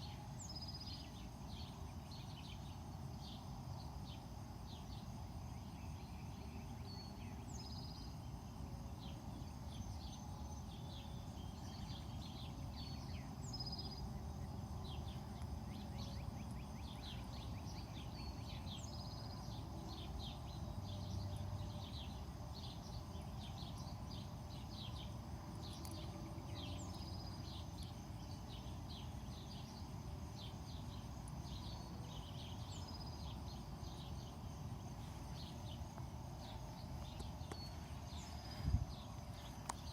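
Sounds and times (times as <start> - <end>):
birds chirping and singing: 0.0 - 39.9
steady low rumble: 13.9 - 39.9.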